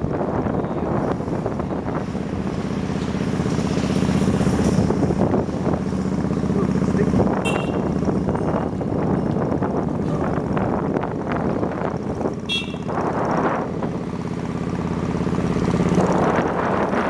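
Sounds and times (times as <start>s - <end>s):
motorbike engine running: 0.0s - 17.0s
wind buffeting microphone: 0.0s - 17.0s
short high-pitched beep: 7.5s - 7.9s.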